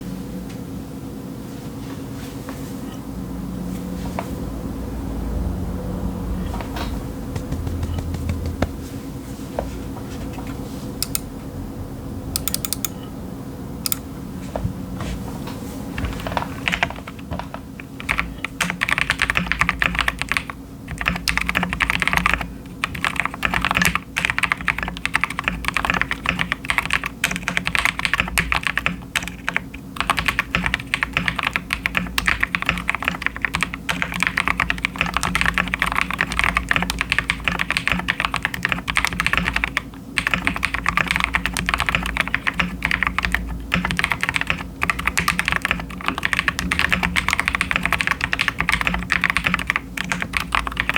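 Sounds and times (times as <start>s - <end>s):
fast typing on mechanical keyboard: 7.3s - 8.8s, 11.0s - 11.3s, 12.4s - 12.9s, 16.0s - 50.9s.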